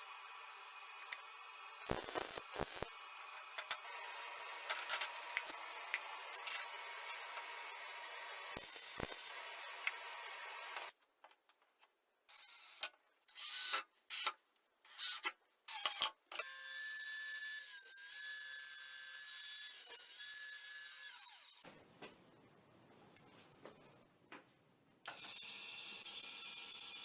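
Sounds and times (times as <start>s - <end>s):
handheld power tool running: 1.8s - 3.0s, 3.6s - 10.9s.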